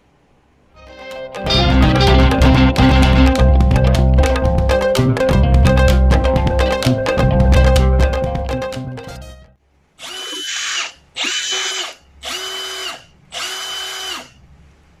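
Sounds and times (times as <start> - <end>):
background music: 0.8 - 9.6
impact wrench motor whining: 10.0 - 14.4.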